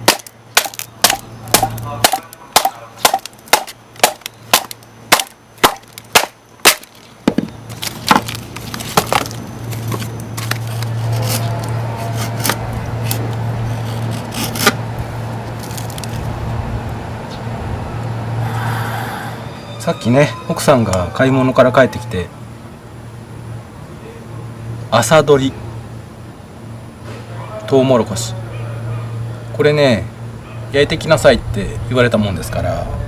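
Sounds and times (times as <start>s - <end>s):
axe chopping wood: 0.0s - 7.5s
steady low hum: 0.0s - 33.0s.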